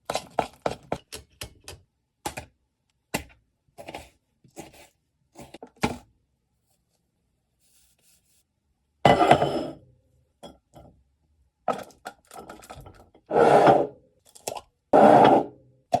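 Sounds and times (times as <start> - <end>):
utensils scraping and clattering: 13.3 - 13.9, 15.0 - 15.5.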